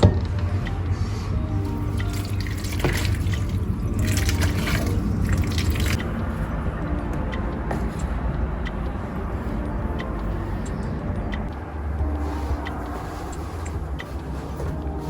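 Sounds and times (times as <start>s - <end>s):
steady low hum: 0.0s - 15.0s
water running and dripping: 1.6s - 6.0s.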